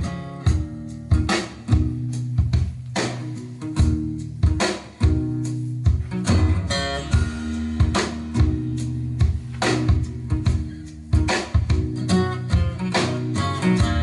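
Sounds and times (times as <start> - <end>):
guitar: 0.0 - 14.0
held bass notes: 0.0 - 14.0
steady drum beat: 0.0 - 14.0.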